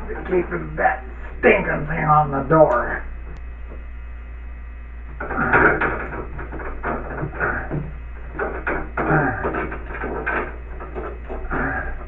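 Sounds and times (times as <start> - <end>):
low steady hum: 0.0 - 12.0
knocks and rattles against a door: 5.1 - 12.0.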